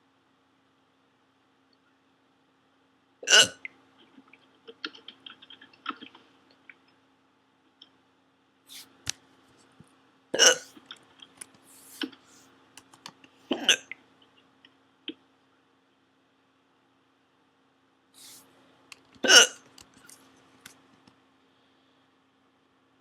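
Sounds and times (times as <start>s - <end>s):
woman hiccuping: 3.2s - 3.6s, 10.4s - 10.7s, 13.5s - 13.8s, 19.2s - 19.6s
small quiet clicks: 10.8s - 15.2s.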